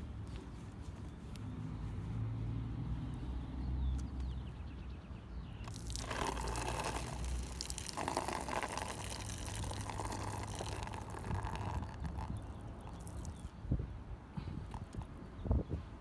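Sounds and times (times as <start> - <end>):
water running and splashing: 5.7 - 13.4.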